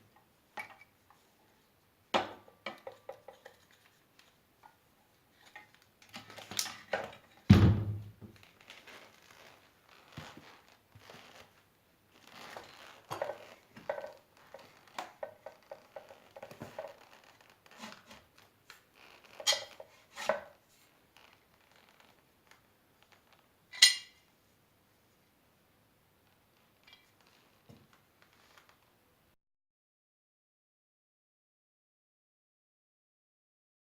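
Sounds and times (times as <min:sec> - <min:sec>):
heavy thud: 0:07.5 - 0:08.3.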